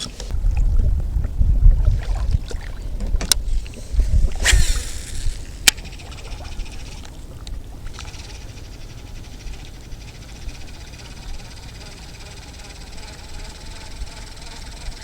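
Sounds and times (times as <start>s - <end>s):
wind buffeting microphone: 0.0s - 11.5s
brief hiss: 3.8s - 5.8s.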